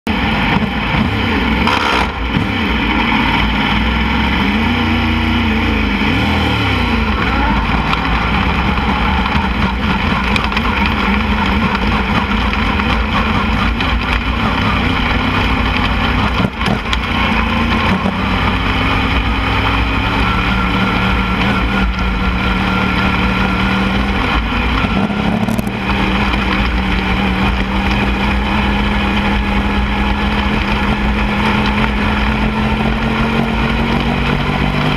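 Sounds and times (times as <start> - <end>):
race car engines revving: 0.1 - 34.9.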